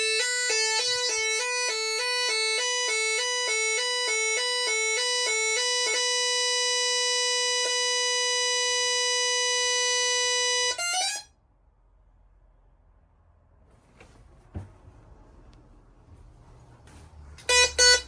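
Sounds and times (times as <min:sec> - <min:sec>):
intruder alarm electronic tone: 0:00.0 - 0:11.3, 0:17.5 - 0:18.0.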